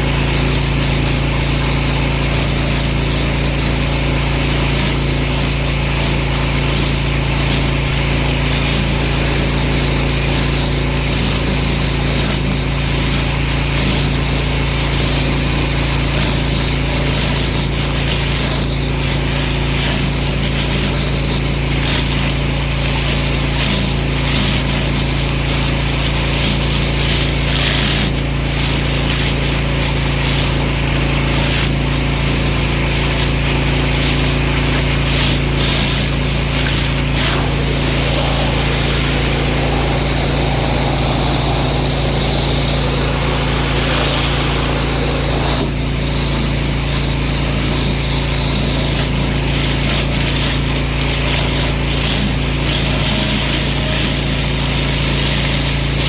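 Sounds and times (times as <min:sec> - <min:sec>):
pressure washer motor humming: 0:00.0 - 0:56.0
water jet hissing: 0:00.0 - 0:56.0.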